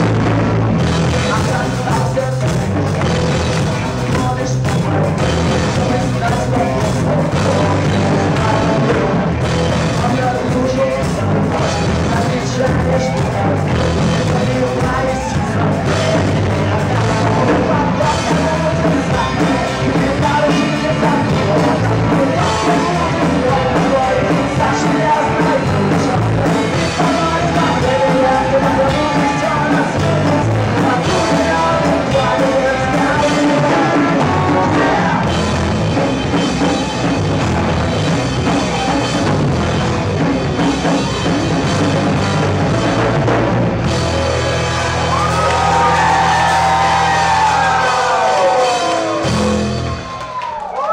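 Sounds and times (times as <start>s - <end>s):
person singing: 0.0s - 37.8s
live rock band playing: 0.0s - 50.9s.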